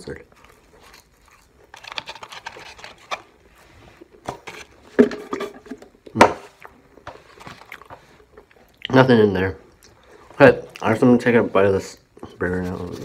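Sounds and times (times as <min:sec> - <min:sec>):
paper packaging rustling: 0:01.6 - 0:05.8, 0:07.1 - 0:08.2.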